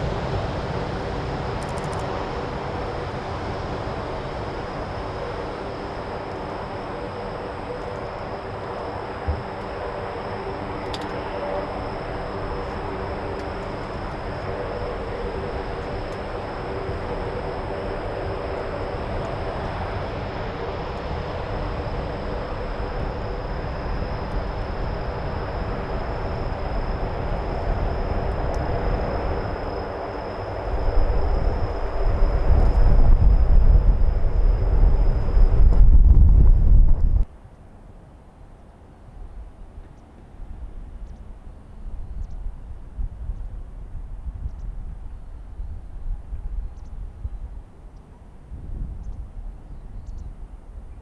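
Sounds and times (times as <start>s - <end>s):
wind buffeting microphone: 0.0s - 37.3s, 48.4s - 51.0s
jet engines whining and roaring: 0.0s - 37.8s.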